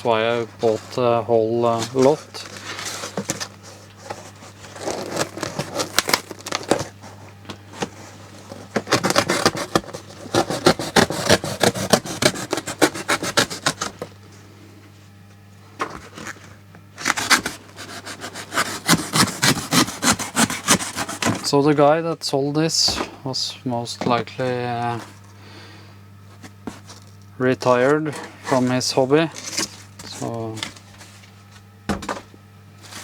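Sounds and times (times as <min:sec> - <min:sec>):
cardboard box scraping and rubbing: 0:00.6 - 0:14.1, 0:15.9 - 0:21.5, 0:26.4 - 0:27.1, 0:27.7 - 0:31.3, 0:32.8 - 0:33.0.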